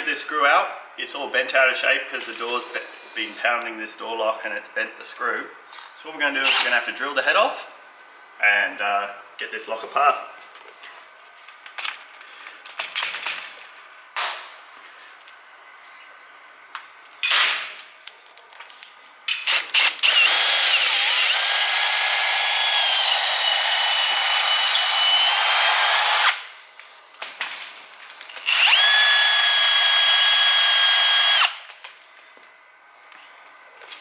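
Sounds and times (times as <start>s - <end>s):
power drill whining: 19.4s - 26.5s, 28.3s - 31.7s.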